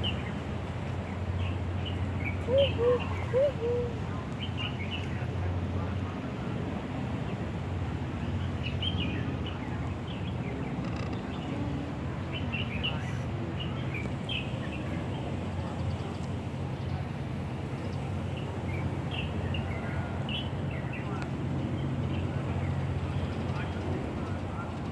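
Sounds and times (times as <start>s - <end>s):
birds chirping: 1.4s - 4.9s.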